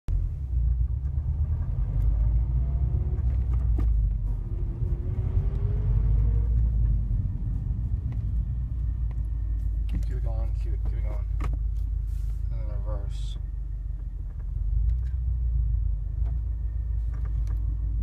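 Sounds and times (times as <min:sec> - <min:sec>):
car engine idling: 0:06.4 - 0:18.0.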